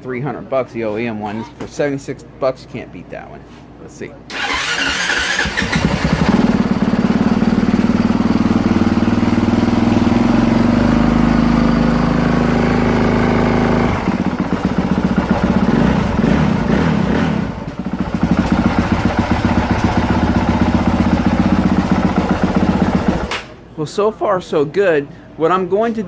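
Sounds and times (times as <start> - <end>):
motorcycle engine running: 4.4 - 23.3.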